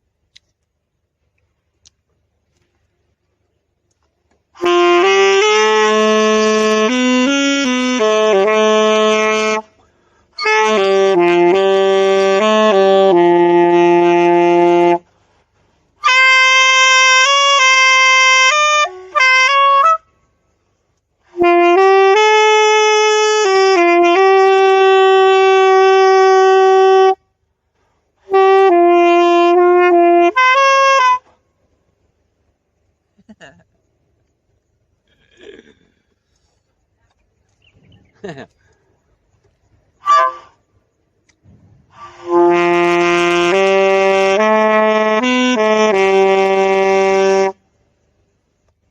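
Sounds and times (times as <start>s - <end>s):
wind instrument slow melody: 4.5s - 27.3s, 28.2s - 31.4s, 40.0s - 40.9s, 41.9s - 47.6s.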